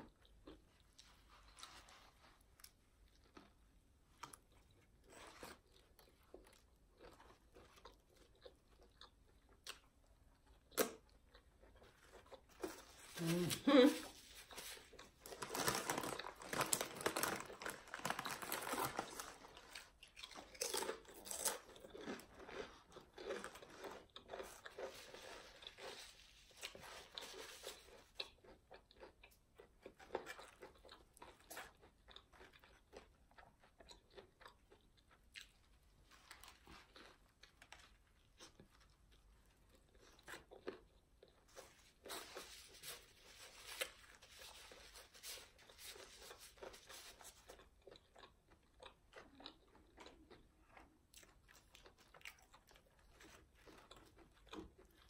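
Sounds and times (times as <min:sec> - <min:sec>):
person crunching and chewing food: 0:00.0 - 0:55.0.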